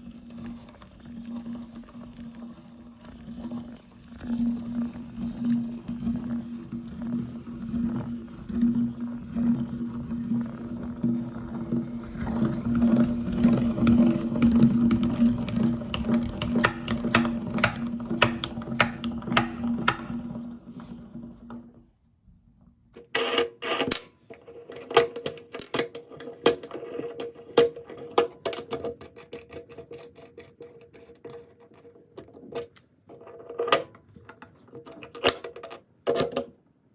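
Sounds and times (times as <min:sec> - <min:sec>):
meat grinder motor humming: 0:00.0 - 0:21.3.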